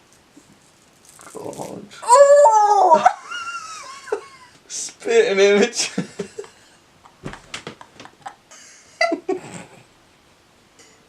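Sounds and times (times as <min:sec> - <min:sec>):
velcro crackling in hair: 0:00.8 - 0:01.8
woman squealing and whimpering: 0:02.0 - 0:03.2.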